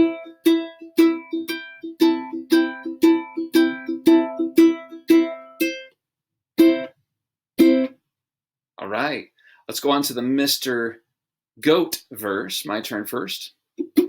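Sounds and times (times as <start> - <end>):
ukulele strumming: 0.0 - 5.9, 6.6 - 6.9, 7.6 - 8.0, 13.8 - 14.0.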